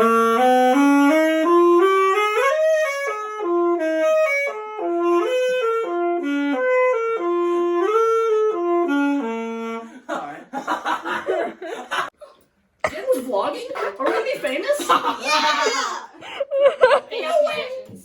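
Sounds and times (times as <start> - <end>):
reed wind instrument melody: 0.0 - 9.9.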